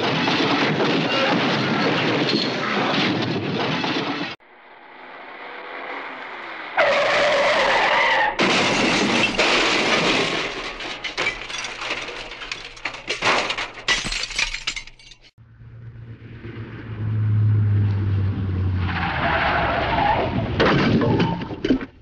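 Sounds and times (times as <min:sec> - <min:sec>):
debris clattering: 0:08.4 - 0:15.3
glass shattering: 0:08.4 - 0:15.3.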